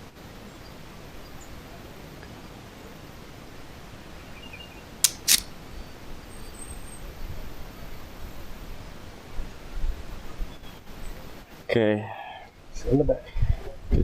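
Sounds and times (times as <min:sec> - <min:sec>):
camera shutter clicking: 0:05.0 - 0:05.5.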